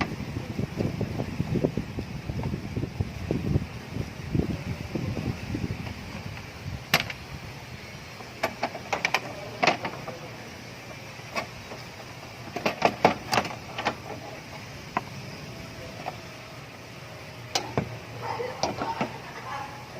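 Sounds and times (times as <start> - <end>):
hand tools clicking and knocking: 8.3 - 10.2, 12.5 - 14.3.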